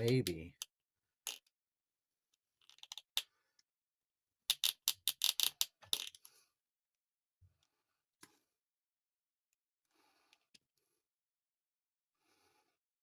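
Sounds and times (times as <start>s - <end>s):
plastic toy parts clicking: 2.6s - 3.3s, 4.5s - 6.3s.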